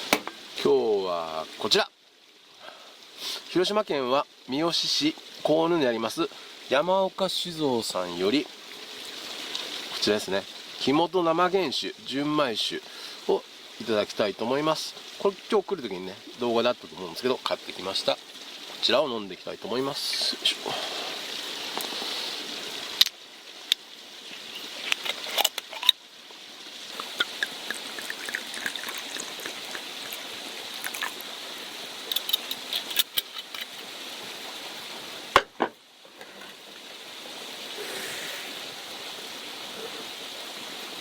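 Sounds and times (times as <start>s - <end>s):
liquid pouring gurgle: 24.3s - 34.4s
cap and glass clicking: 27.0s - 30.2s.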